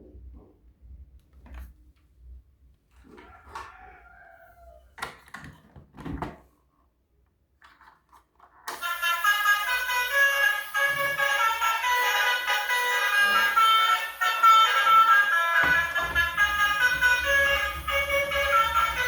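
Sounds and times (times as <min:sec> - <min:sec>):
loud music: 0:08.8 - 0:19.0.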